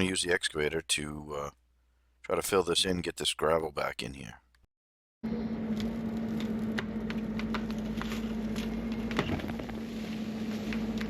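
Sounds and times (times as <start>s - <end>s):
mini excavator humming: 5.2s - 11.0s.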